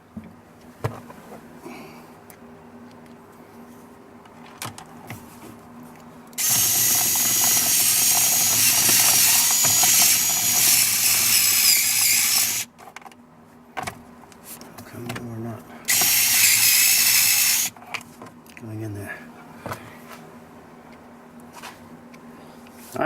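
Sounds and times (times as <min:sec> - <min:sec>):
cordless drill driving screw: 0:06.4 - 0:12.7, 0:15.9 - 0:17.7.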